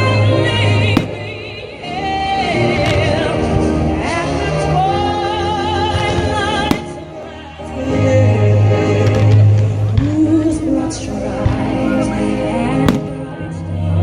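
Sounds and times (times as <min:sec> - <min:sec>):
singer with vibrato over band: 0:00.0 - 0:14.0
firework bangs: 0:00.9 - 0:01.7, 0:06.6 - 0:07.3, 0:12.9 - 0:13.4.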